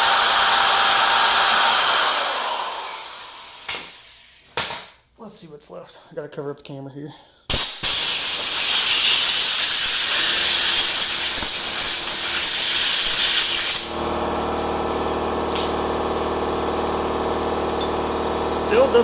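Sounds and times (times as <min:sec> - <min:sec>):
compressed air hissing: 0:07.5 - 0:14.0
steady motor hum: 0:13.9 - 0:19.0.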